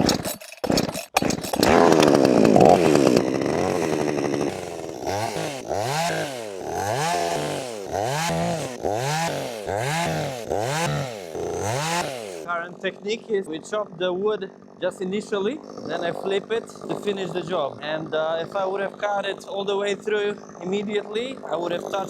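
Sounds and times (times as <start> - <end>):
starter cord pulls: 0.0 - 8.9
chainsaw engine running: 0.0 - 22.0.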